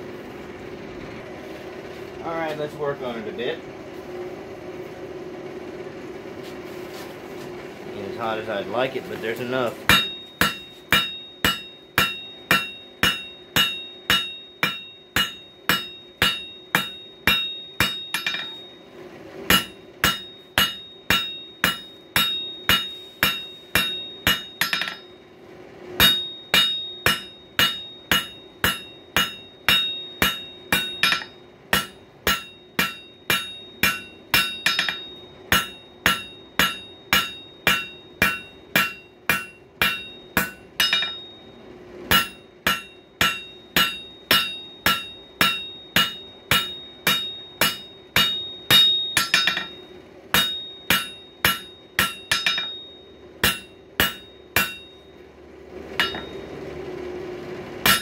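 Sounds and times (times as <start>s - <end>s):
faint steady hum: 0.0s - 58.0s
hammer striking steel on anvil: 9.3s - 25.2s, 26.0s - 55.3s, 56.0s - 56.6s.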